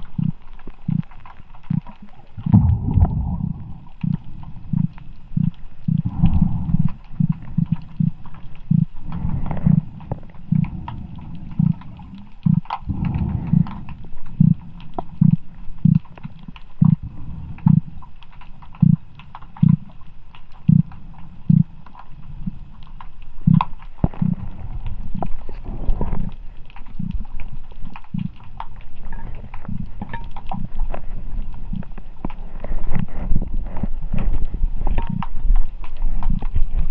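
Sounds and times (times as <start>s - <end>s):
fish grunting low: 1.7s - 16.2s, 16.8s - 18.0s.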